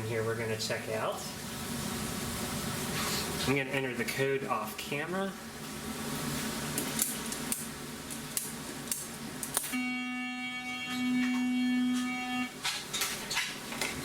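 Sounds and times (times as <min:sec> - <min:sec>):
door-release buzzer: 0:09.7 - 0:12.6.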